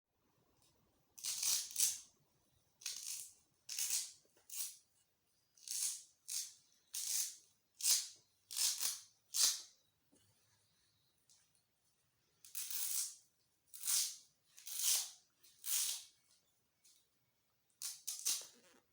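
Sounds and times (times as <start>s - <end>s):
velcro fastener ripping: 17.8s - 18.8s.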